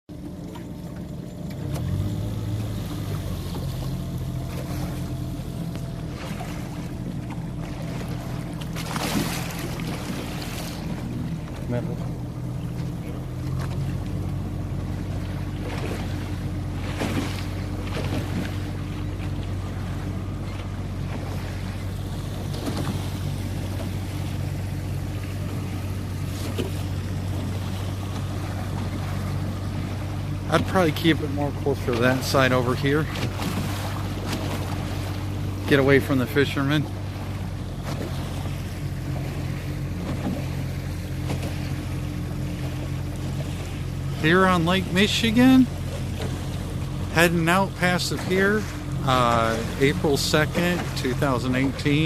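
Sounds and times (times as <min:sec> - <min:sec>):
boat engine running: 0:00.0 - 0:52.0
water noise: 0:00.0 - 0:52.0.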